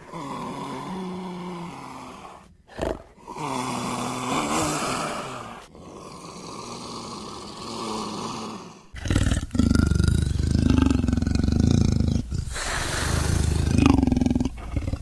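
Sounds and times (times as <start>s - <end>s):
creature snorting hiss: 0.0s - 15.0s.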